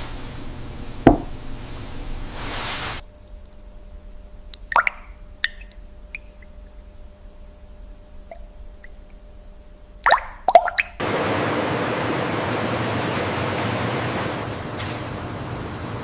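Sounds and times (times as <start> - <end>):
rushing hiss of liquid: 1.6 - 3.0
liquid dripping: 4.4 - 6.9, 8.2 - 11.0
loud liquid plop: 4.5 - 6.3, 10.0 - 11.0.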